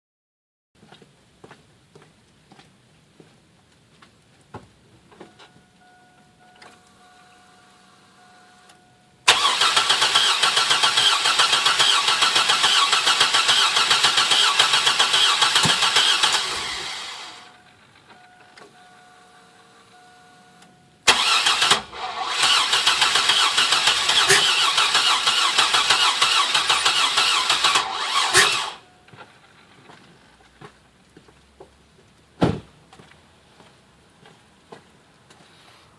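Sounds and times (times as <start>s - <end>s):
faint steady tone: 5.0s - 9.3s, 17.3s - 21.1s, 28.7s - 30.3s
starter cranking engine: 9.3s - 17.5s, 21.1s - 28.8s.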